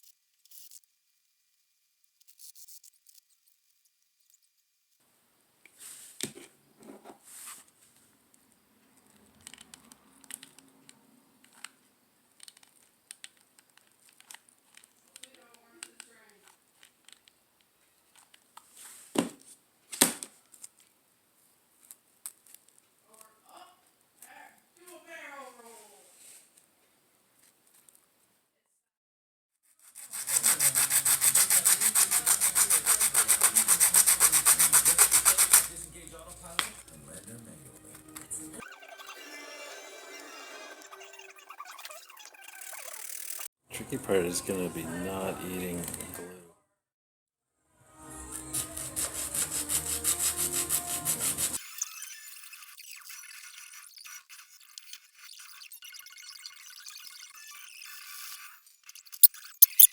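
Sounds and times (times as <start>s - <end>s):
dry clicks and crinkles: 8.3s - 18.7s, 21.8s - 23.3s
hand tool scraping: 29.8s - 35.9s, 48.3s - 55.3s.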